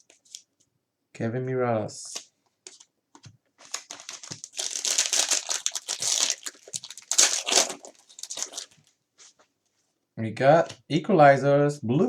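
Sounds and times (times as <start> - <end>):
plastic packaging crinkling: 3.6 - 8.9.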